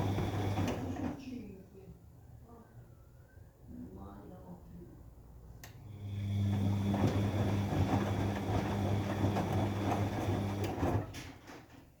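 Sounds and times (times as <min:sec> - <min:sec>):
washing machine motor humming: 0:00.0 - 0:01.2, 0:05.8 - 0:11.2.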